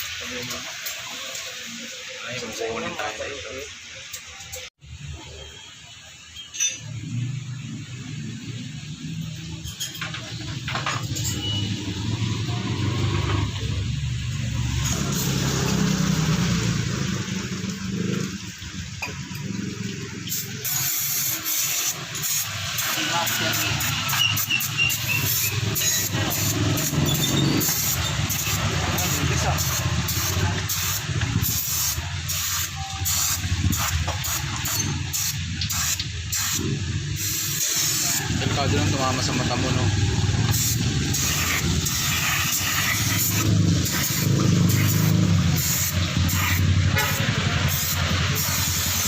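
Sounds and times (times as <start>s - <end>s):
hiss: 11.2s - 49.0s
small engine running: 25.3s - 31.1s.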